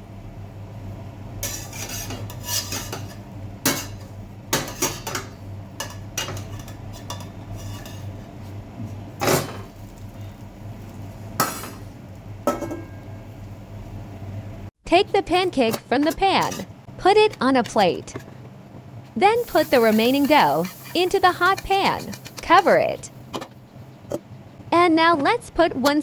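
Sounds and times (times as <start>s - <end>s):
steady low hum: 0.0s - 26.0s
spatula scraping a frying pan: 1.4s - 4.0s, 5.8s - 8.2s, 19.4s - 23.0s.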